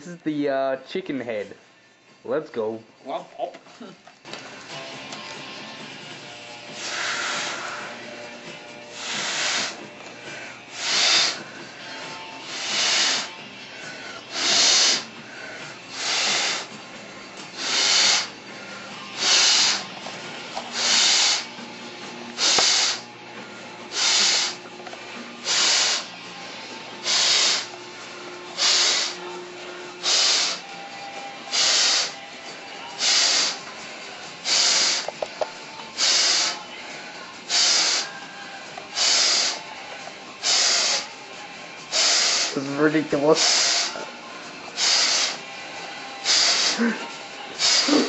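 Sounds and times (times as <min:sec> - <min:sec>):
breaths blown into rubber glove: 0:10.7 - 0:11.4, 0:12.5 - 0:13.3, 0:17.6 - 0:18.3, 0:19.2 - 0:19.8, 0:20.7 - 0:21.5, 0:23.9 - 0:24.6, 0:25.4 - 0:26.1, 0:27.0 - 0:27.7, 0:28.6 - 0:29.2, 0:30.0 - 0:30.6, 0:33.0 - 0:33.6, 0:41.9 - 0:42.6, 0:44.8 - 0:45.4, 0:46.2 - 0:47.0, 0:47.6 - 0:48.0.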